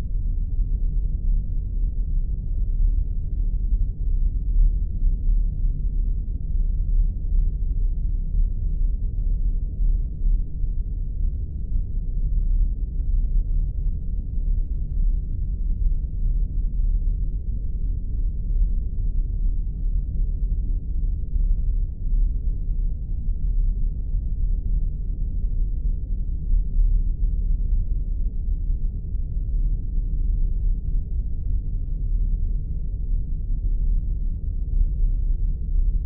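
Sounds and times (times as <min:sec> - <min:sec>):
deep rumbling drone: 0:00.0 - 0:36.0.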